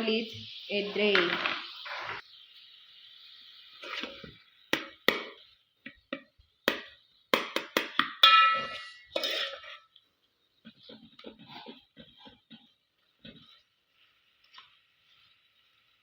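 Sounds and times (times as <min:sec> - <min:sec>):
cookware clattering: 0:07.9 - 0:09.8.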